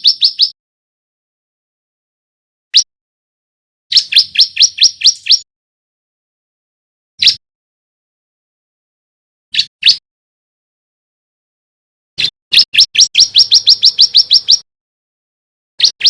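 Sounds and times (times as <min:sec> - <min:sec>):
bird sharp chirps: 0:00.0 - 0:00.6, 0:03.9 - 0:05.5, 0:07.2 - 0:07.4, 0:09.5 - 0:10.0, 0:12.2 - 0:14.7, 0:15.8 - 0:16.0.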